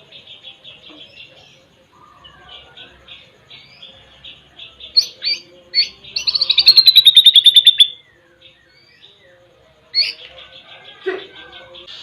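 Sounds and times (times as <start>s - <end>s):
bird chattering and trilling: 0.0s - 8.0s.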